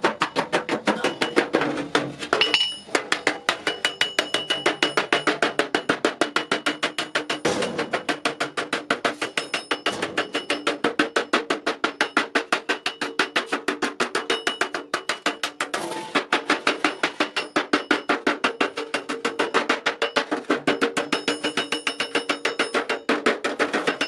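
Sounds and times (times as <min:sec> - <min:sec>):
hammer blows on metal anvil: 0:02.4 - 0:13.2.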